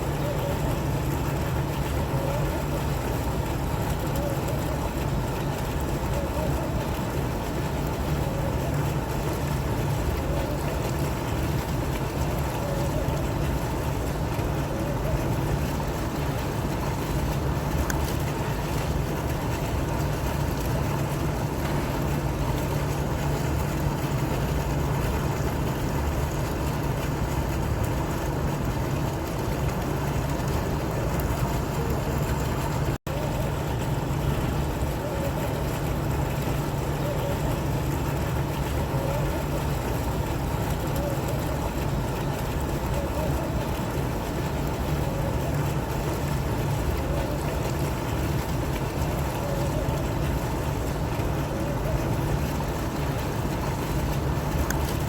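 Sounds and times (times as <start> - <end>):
fountain water splashing: 0.0 - 55.0.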